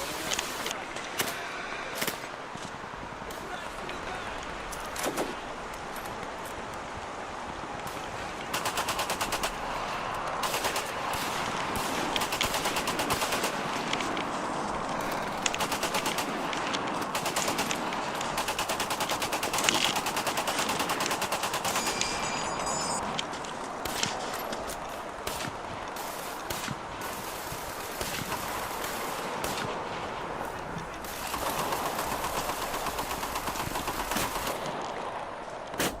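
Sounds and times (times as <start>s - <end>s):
steady background noise: 0.0s - 36.0s
automatic gunfire bursts: 8.5s - 9.7s, 10.4s - 13.8s, 15.4s - 16.4s, 17.0s - 22.5s, 31.1s - 34.6s.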